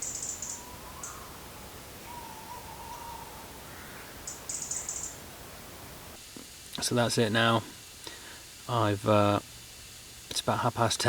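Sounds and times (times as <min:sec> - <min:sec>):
owls hooting: 0:00.0 - 0:05.7.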